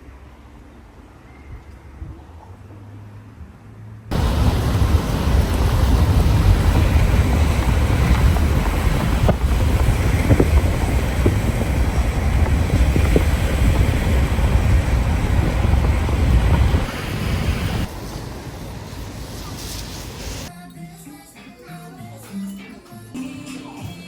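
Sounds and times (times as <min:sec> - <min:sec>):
wind buffeting microphone: 0:04.1 - 0:20.5.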